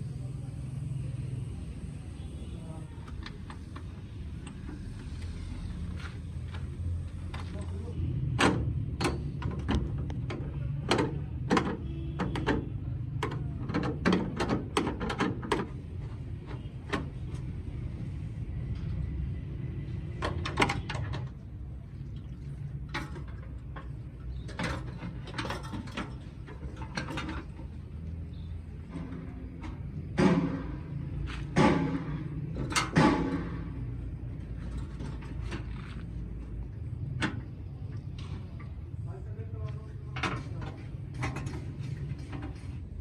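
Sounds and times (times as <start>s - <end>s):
hand tools clicking and knocking: 8.4s - 15.8s.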